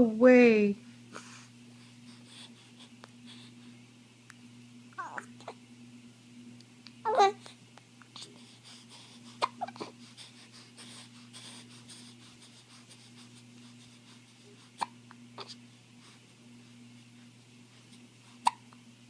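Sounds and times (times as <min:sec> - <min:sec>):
faint steady hum: 0:00.0 - 0:19.0
person hiccuping: 0:18.4 - 0:18.6.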